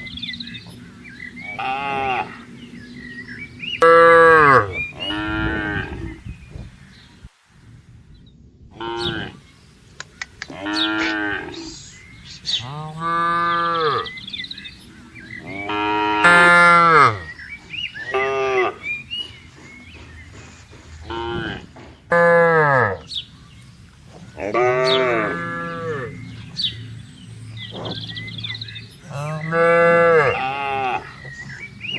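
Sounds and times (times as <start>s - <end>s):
cows mooing: 0.1s - 6.2s, 8.8s - 9.4s, 10.4s - 11.9s, 12.5s - 14.7s, 15.3s - 19.0s, 21.0s - 23.1s, 24.2s - 26.9s, 27.6s - 31.9s.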